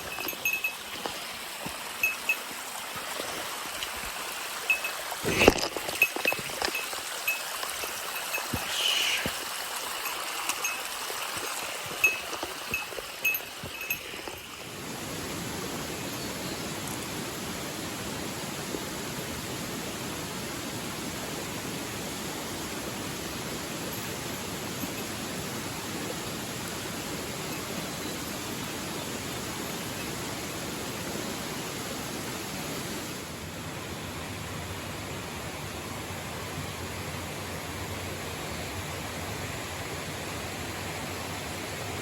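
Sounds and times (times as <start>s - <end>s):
stream water rushing: 0.0s - 42.0s.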